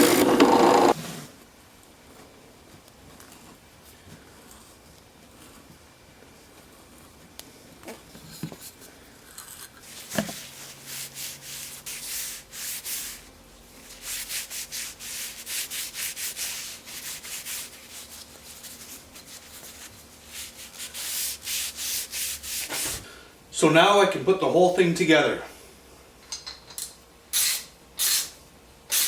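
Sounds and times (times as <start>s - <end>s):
hand sanding wood: 9.8s - 23.0s.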